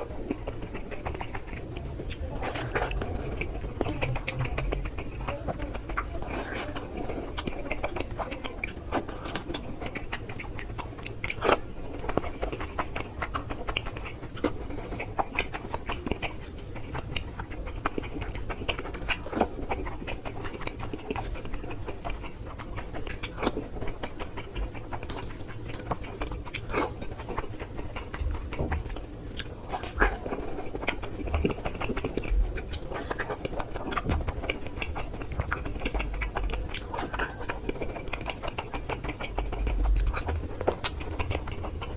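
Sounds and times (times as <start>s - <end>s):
low steady hum: 0.0s - 41.9s
person chewing wetly: 0.0s - 41.9s.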